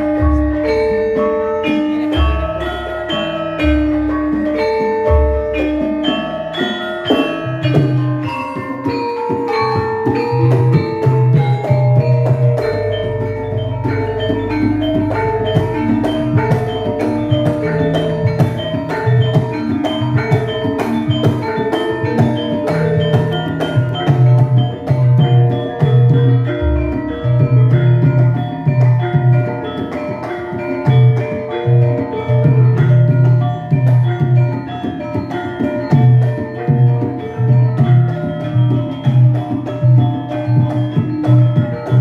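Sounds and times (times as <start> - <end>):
drum beats: 0.0 - 42.0
metallophones and gong-chimes ringing: 0.0 - 42.0
low sustained tone: 10.2 - 21.2.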